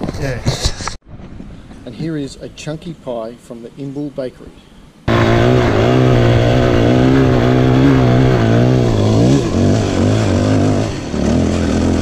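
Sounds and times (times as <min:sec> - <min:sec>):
dirt bike engine running: 0:05.1 - 0:12.0.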